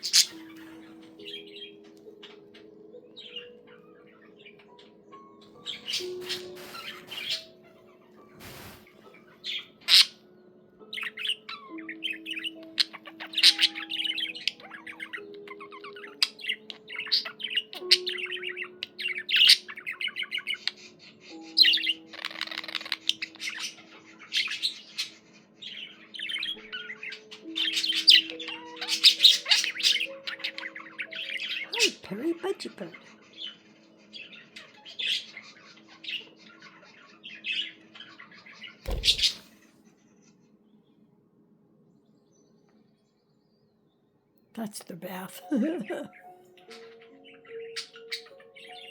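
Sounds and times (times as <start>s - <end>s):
budgerigar warbling and chattering: 0.0s - 4.6s, 5.6s - 10.2s, 10.9s - 20.8s, 21.6s - 33.6s, 34.2s - 39.5s.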